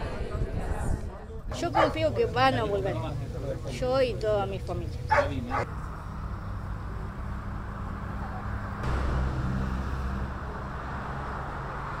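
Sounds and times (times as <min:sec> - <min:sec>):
low engine-like hum and rumble: 0:03.2 - 0:12.0.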